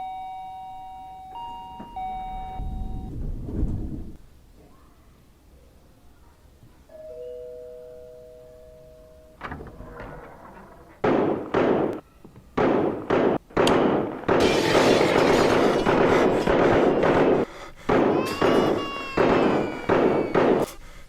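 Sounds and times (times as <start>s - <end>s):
two-tone doorbell chime: 0.0s - 3.1s, 6.9s - 9.4s
loud bangs and noise bursts: 11.0s - 12.0s, 12.6s - 20.8s.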